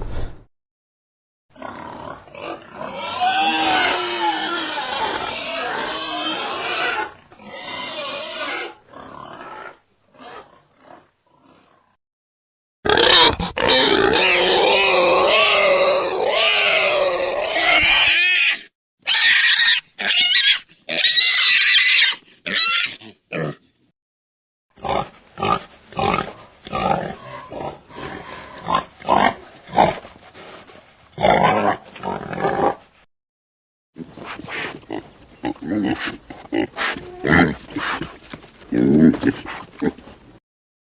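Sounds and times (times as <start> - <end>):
wild boar squealing: 1.6 - 11.8, 12.9 - 23.6, 35.8 - 38.1
wild boar grunting: 34.0 - 40.3.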